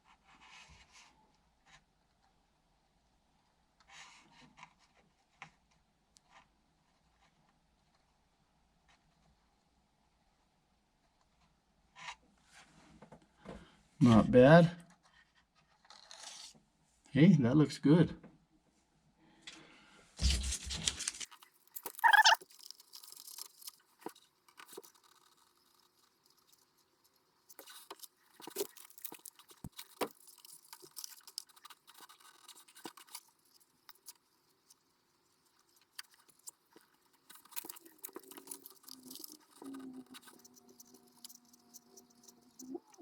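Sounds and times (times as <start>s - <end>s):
handling scrapes and rustles: 20.2s - 43.0s.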